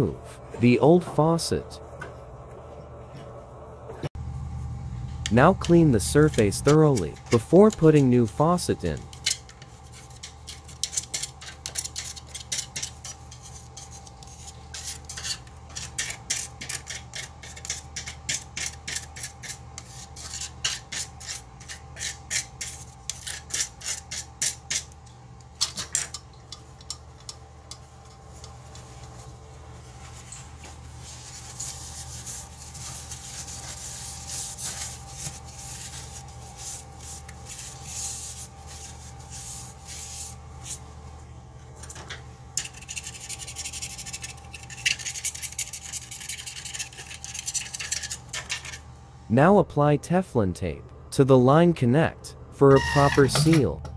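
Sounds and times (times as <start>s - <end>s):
sink being scrubbed by hand: 30.8s - 40.8s, 42.6s - 48.2s.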